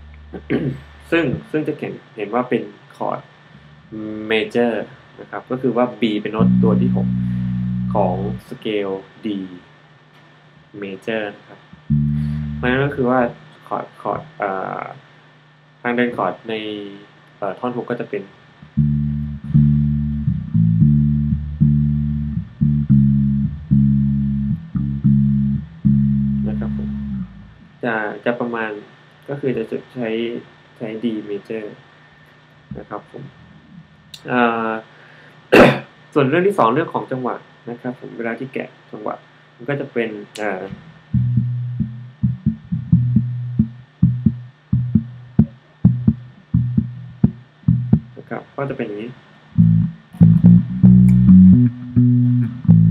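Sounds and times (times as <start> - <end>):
bass guitar plucked notes: 0.0 - 1.7, 3.6 - 4.3, 6.3 - 8.6, 11.6 - 13.4, 18.6 - 27.8, 32.7 - 34.3, 40.4 - 48.2, 49.6 - 52.9.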